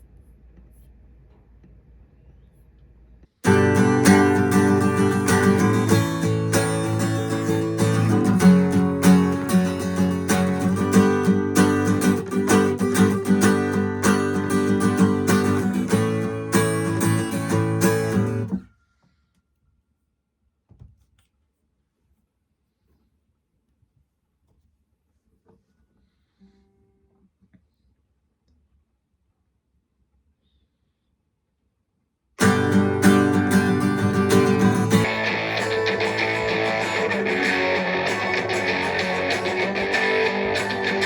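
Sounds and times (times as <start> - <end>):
guitar plucked and strummed: 3.4 - 18.6, 32.4 - 41.0.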